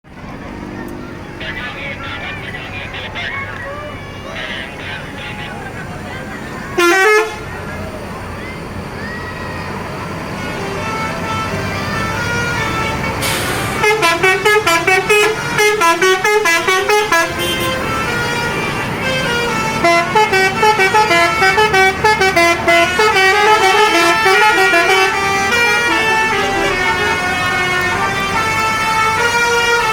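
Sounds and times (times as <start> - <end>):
engine running: 0.0 - 29.9
multi-trumpet air horn melody: 6.7 - 7.5, 10.3 - 29.9.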